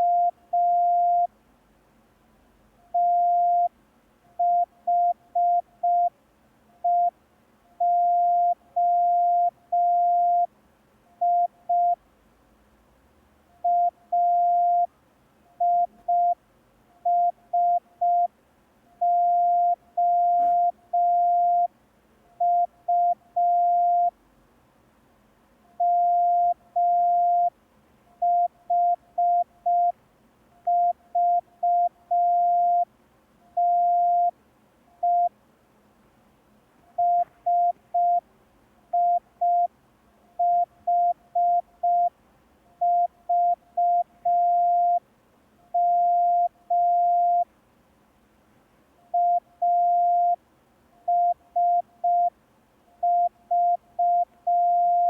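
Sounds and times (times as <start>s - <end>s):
morse code beeps: 3.0s - 3.7s, 4.4s - 6.1s, 7.8s - 10.5s, 11.2s - 12.0s, 13.6s - 14.9s, 15.6s - 16.4s, 17.1s - 18.3s, 19.0s - 21.7s, 22.4s - 24.1s, 25.8s - 27.5s, 30.7s - 32.8s, 33.6s - 34.3s, 35.0s - 35.3s, 37.0s - 38.2s, 39.0s - 39.7s, 40.4s - 42.1s, 42.8s - 45.0s, 45.8s - 47.4s, 49.2s - 50.4s, 51.1s - 52.3s, 53.0s - 55.0s.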